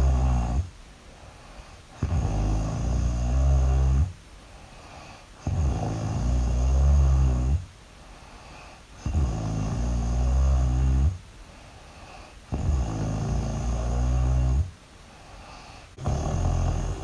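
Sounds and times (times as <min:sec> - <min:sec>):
loud low snoring: 0:00.0 - 0:00.7, 0:01.9 - 0:04.2, 0:04.8 - 0:07.7, 0:08.5 - 0:11.2, 0:12.0 - 0:14.7, 0:15.5 - 0:17.0.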